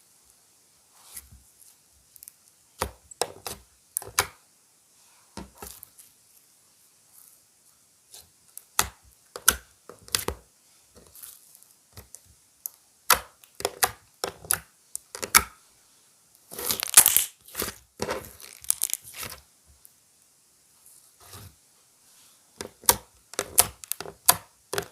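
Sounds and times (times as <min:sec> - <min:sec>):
sticky clicks and crackling pops: 0:16.7 - 0:17.7, 0:18.3 - 0:19.3, 0:22.6 - 0:24.9.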